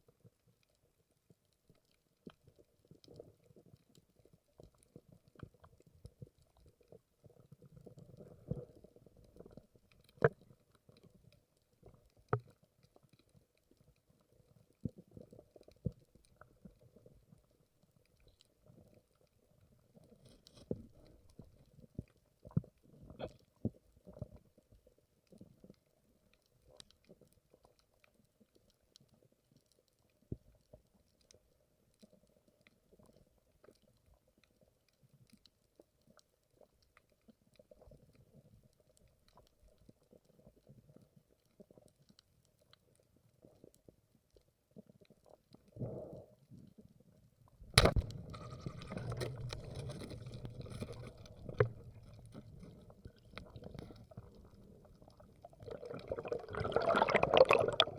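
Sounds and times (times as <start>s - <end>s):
low underwater rumble: 47.1s - 57.9s
crackling clicks: 47.6s - 57.9s
rushing bubbling water: 48.1s - 57.9s.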